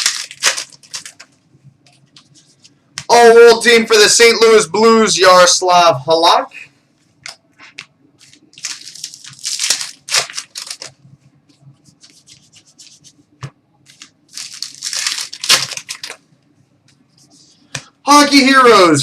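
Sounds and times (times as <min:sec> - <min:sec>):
foil wrapper crinkling and tearing: 0:00.0 - 0:01.4, 0:08.2 - 0:11.0, 0:13.9 - 0:16.2.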